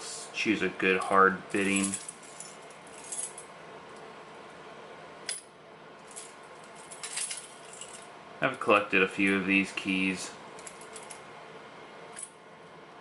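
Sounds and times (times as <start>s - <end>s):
keys clinking on a key ring: 1.6s - 3.5s, 6.0s - 8.1s, 10.6s - 11.2s.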